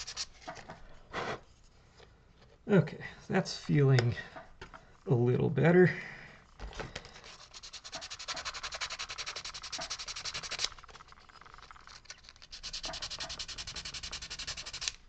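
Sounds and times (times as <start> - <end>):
sandpaper rubbing on wood: 0.0 - 0.4, 7.3 - 10.9, 11.9 - 15.0.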